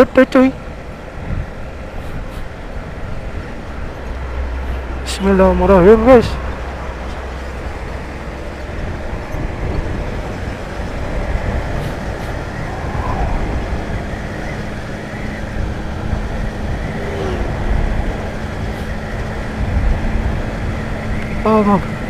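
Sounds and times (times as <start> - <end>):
road noise: 0.0 - 22.0
traffic noise: 0.0 - 22.0
wind rush on microphone: 0.4 - 22.0
motorcycle engine: 5.7 - 22.0.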